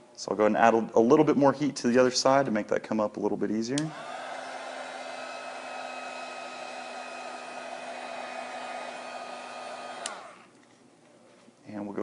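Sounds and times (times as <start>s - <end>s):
heat gun switch click: 3.8s - 4.0s, 9.5s - 10.4s
heat gun blowing with motor whine: 3.8s - 10.6s.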